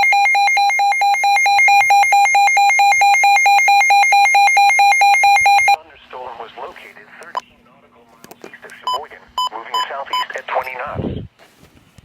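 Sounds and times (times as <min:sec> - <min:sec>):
harsh pulsing electronic alert tone: 0:00.0 - 0:05.8.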